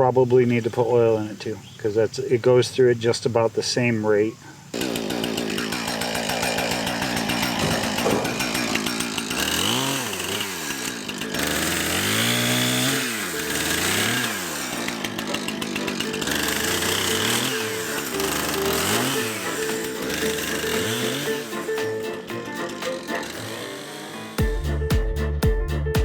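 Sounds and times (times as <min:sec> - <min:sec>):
chainsaw revving: 0:04.7 - 0:24.6.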